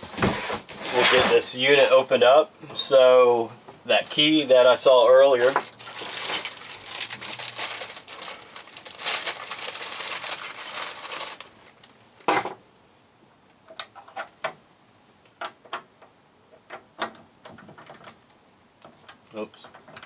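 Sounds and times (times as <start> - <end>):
rustling: 0.0 - 2.2, 5.0 - 12.3.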